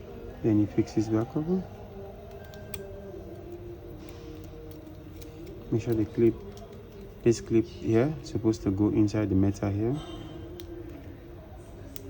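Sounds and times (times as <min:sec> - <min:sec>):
small phone parts clicking: 0:02.0 - 0:07.2, 0:10.4 - 0:11.2.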